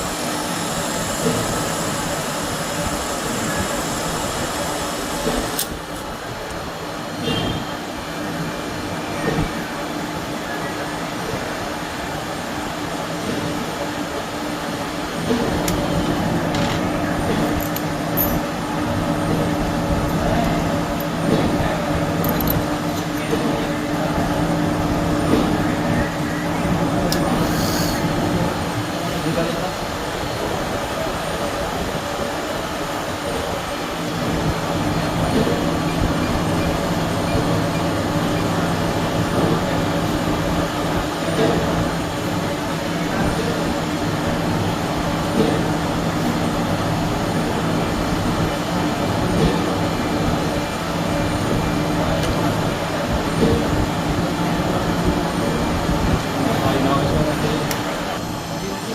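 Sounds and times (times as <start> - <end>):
milling machine humming: 0.0 - 58.9.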